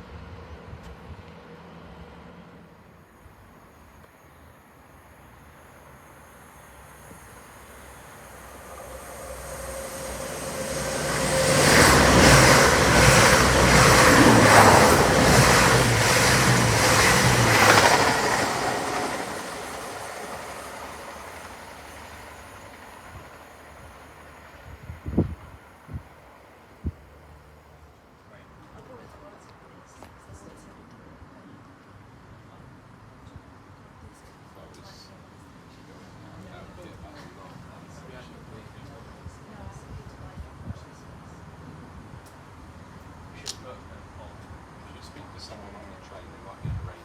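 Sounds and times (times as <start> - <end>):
train passing at speed: 0.0 - 29.0
wheels clattering over rail joints: 8.8 - 22.7.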